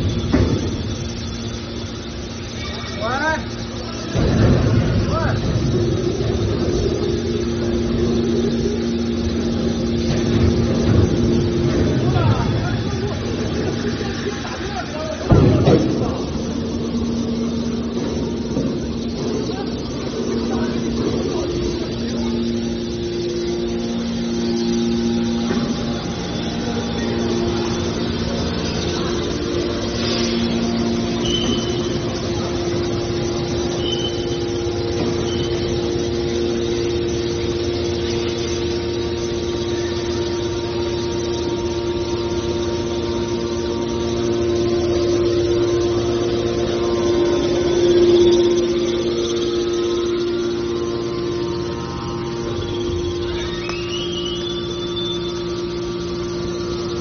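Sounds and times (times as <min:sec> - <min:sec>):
hydraulic pump whine: 0:00.0 - 0:57.0
short high squeaks: 0:30.0 - 0:31.9.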